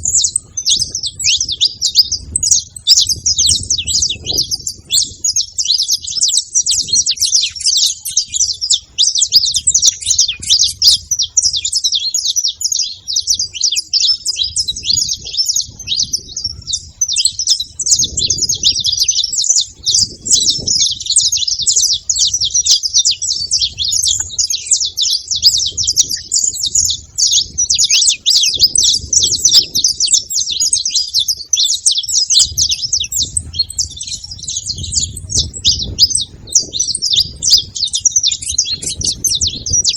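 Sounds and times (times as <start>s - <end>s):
finches chirping rapidly: 0.0s - 39.9s.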